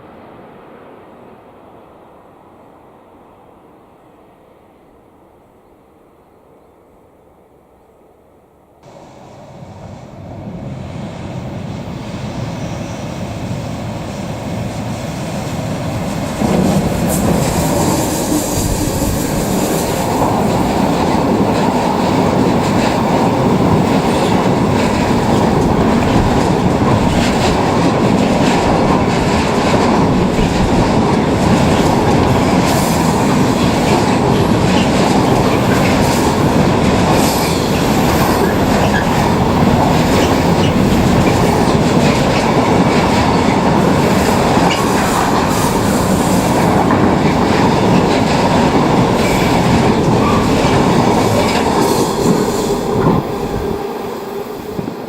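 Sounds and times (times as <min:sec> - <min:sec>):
freight train rumbling: 0:00.0 - 0:55.0.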